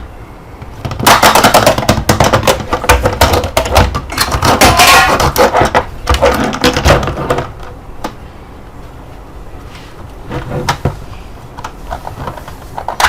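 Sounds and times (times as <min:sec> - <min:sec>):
hard objects clicking and knocking: 0:00.6 - 0:08.2, 0:10.3 - 0:13.0.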